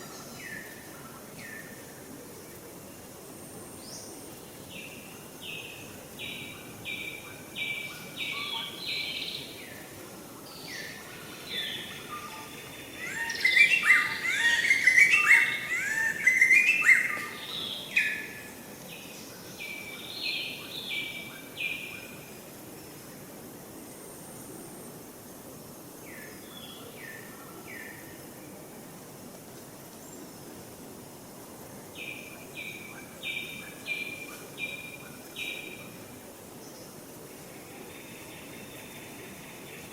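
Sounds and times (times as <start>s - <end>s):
high-pitched animal calls: 13.0s - 17.3s.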